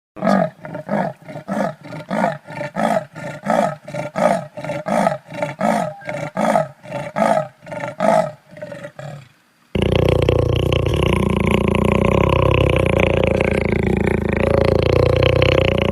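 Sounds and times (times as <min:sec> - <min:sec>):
big cat roaring: 0:00.2 - 0:15.9.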